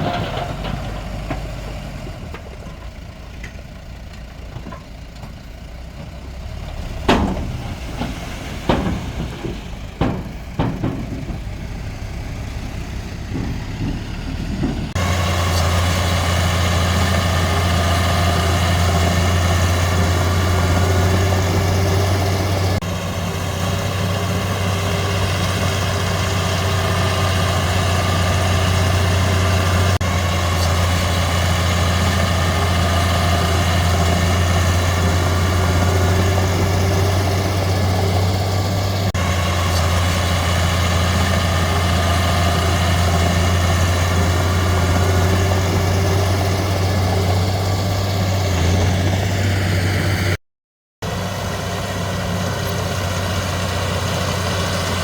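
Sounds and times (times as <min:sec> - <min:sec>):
heavy diesel engine running: 0:00.0 - 0:50.4, 0:51.0 - 0:55.0.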